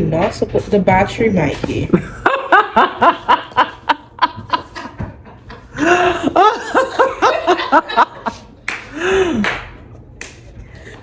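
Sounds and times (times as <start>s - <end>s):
man laughing: 5.6s - 9.4s.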